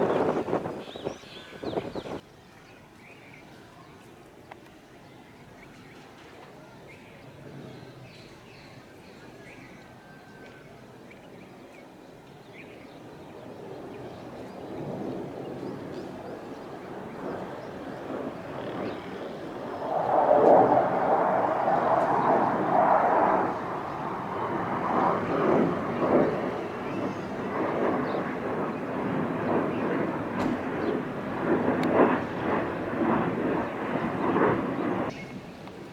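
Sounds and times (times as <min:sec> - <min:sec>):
fighter jet flying by: 0:14.8 - 0:35.5.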